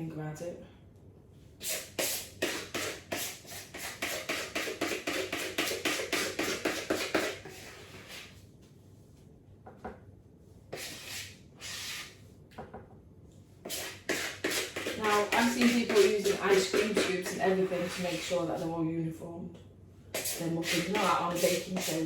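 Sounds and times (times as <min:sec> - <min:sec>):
spoon scraping mixing bowl: 0:01.7 - 0:08.3, 0:13.6 - 0:18.7, 0:20.1 - 0:22.0.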